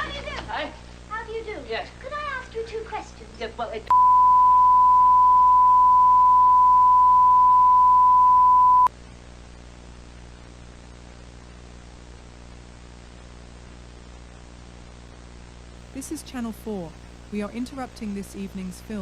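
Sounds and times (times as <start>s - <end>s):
faint hiss and hum: 0.0s - 19.0s
steady broadcast tone: 3.9s - 8.9s.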